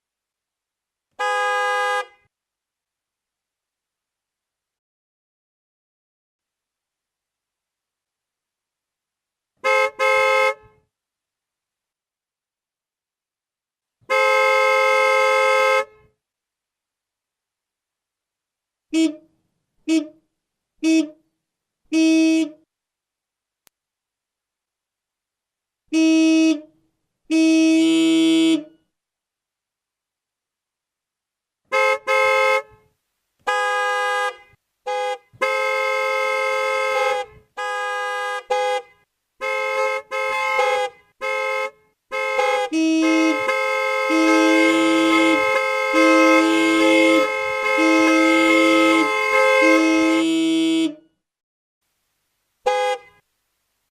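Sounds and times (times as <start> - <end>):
horn blasts: 1.2 - 2.3, 9.6 - 10.9, 14.0 - 16.2, 20.8 - 21.2, 21.9 - 22.6, 25.9 - 26.7, 27.3 - 28.8, 31.7 - 32.9, 33.5 - 51.0, 52.7 - 53.2.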